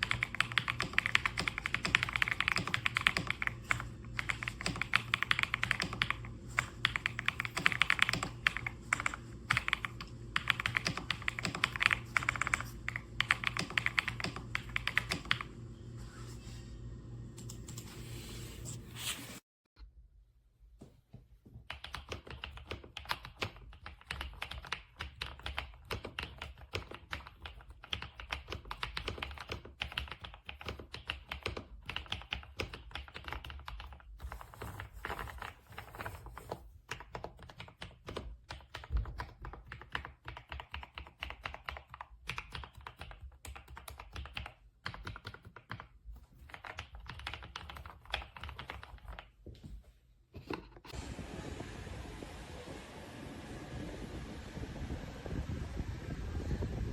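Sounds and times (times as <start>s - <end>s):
mechanical keyboard typing: 0.0s - 15.5s, 21.7s - 34.1s, 36.9s - 49.3s.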